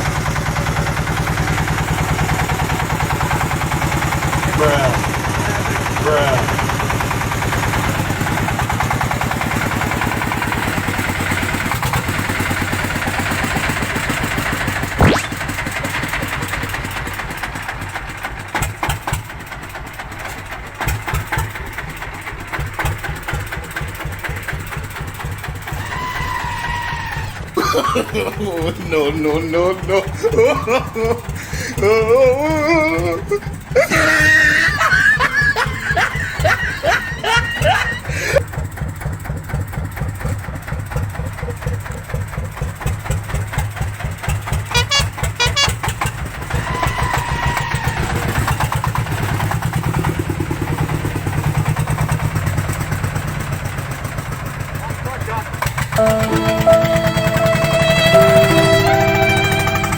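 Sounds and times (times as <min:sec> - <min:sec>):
diesel engine chugging: 0:00.0 - 0:59.9
engine knocks: 0:00.0 - 0:59.9
voices: 0:04.3 - 0:06.6, 0:25.8 - 0:38.4, 0:56.0 - 0:59.9.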